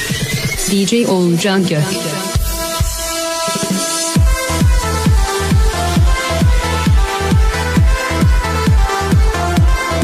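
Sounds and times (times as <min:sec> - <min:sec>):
kick drum beat: 0:02.4 - 0:10.0.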